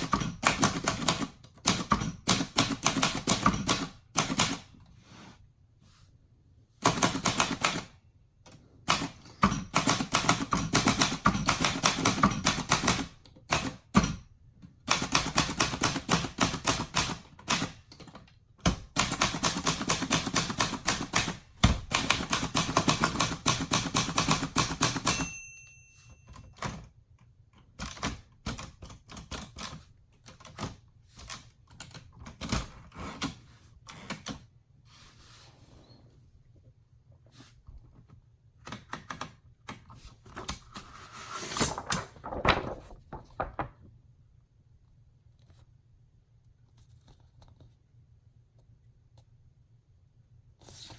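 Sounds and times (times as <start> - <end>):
manual typewriter typing: 0.0 - 4.7, 6.8 - 8.0, 8.9 - 14.2, 14.8 - 25.3, 27.6 - 34.4, 41.4 - 43.7
typewriter margin bell ring: 24.6 - 26.8.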